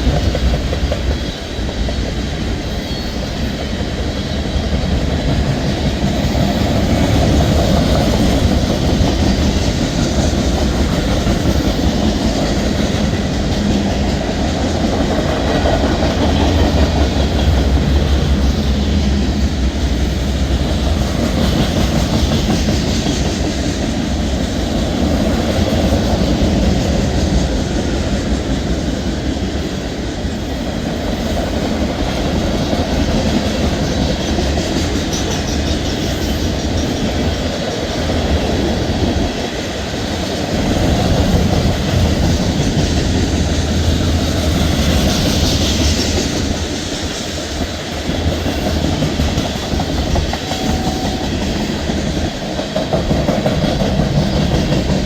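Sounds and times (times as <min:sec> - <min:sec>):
freight train wheels rumbling on track: 0:00.0 - 0:55.0.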